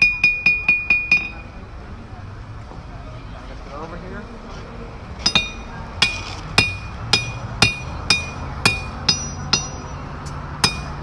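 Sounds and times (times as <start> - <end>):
hammer striking metal: 0.0 - 1.4, 5.2 - 11.0.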